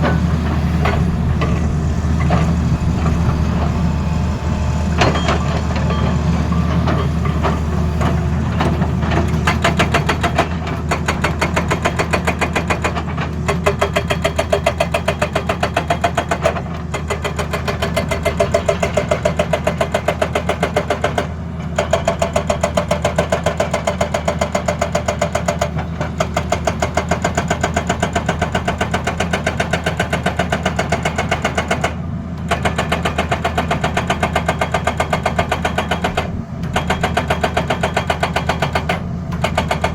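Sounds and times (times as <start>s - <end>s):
diesel engine drone: 0.0s - 11.8s
hydraulic breaker hammering: 0.0s - 39.9s.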